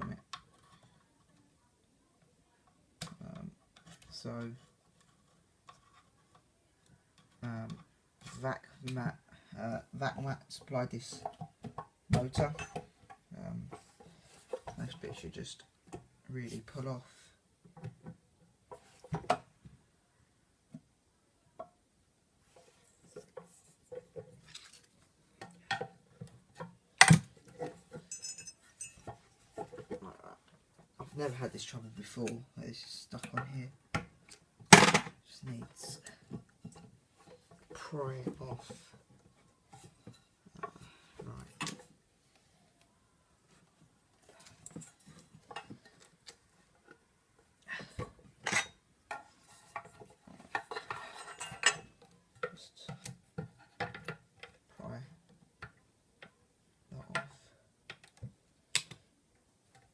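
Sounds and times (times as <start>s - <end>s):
metal parts clinking and knocking: 27.0s - 30.0s, 48.4s - 52.6s.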